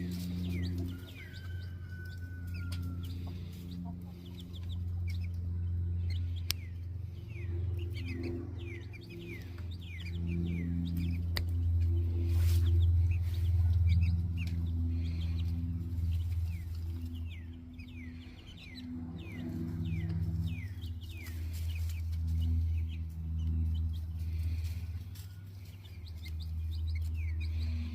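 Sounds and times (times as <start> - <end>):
chicks peeping: 0.0 - 27.9
loud steady low hum: 0.0 - 27.9.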